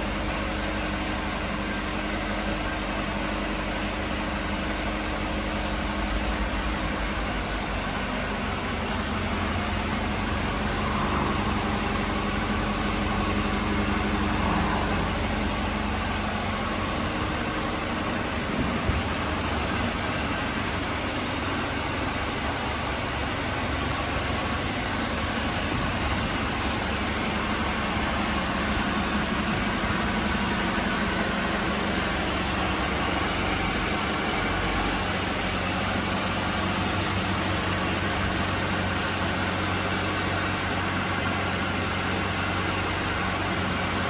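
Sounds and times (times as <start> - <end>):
vehicle engine idling: 0.0 - 44.0
high-pitched whine: 4.6 - 44.0.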